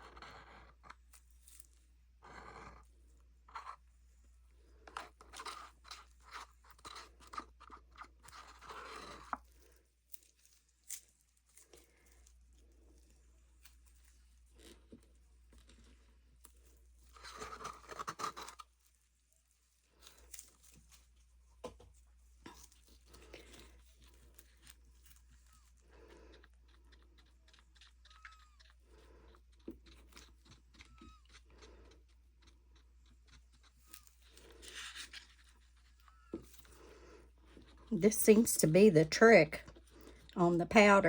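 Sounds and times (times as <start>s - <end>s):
stir stick scraping plastic cup: 4.9s - 9.6s.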